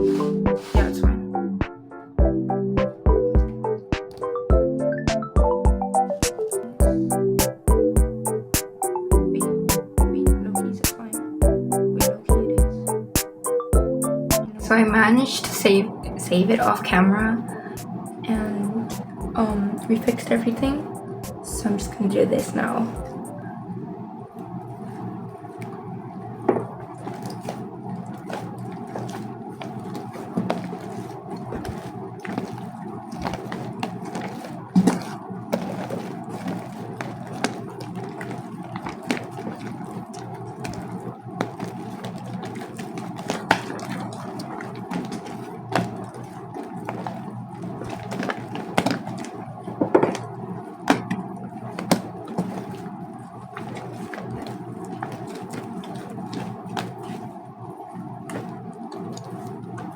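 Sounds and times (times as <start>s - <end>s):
slime squishing: 0.0s - 1.2s, 14.3s - 59.9s
steady low hum: 0.0s - 59.9s.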